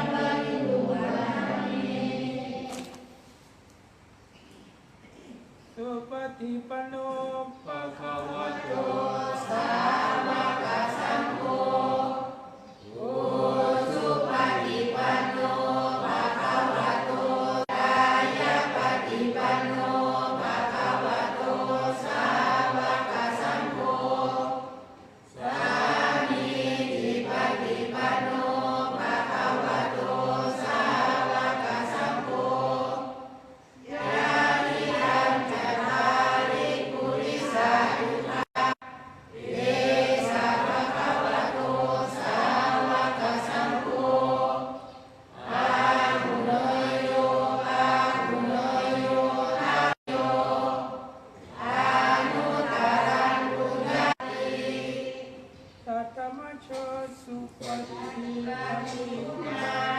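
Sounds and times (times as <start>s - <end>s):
group chanting in unison: 0.0s - 3.2s, 7.5s - 55.6s, 56.7s - 59.9s.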